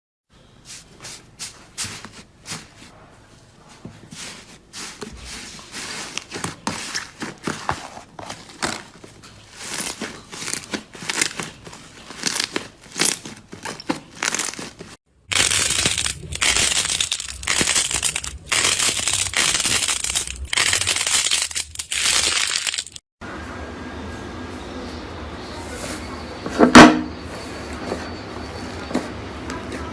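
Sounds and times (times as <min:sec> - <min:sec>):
slime crackling and popping: 0:15.3 - 0:22.8.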